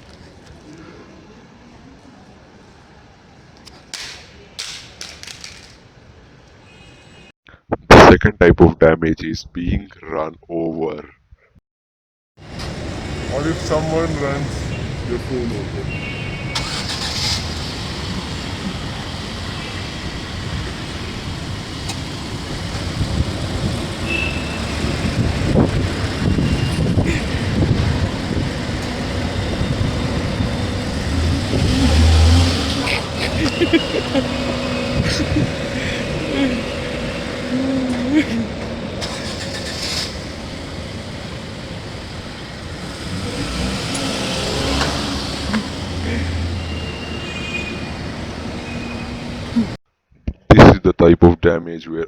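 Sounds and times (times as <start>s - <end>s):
vehicle engine rumbling: 12.4s - 49.8s.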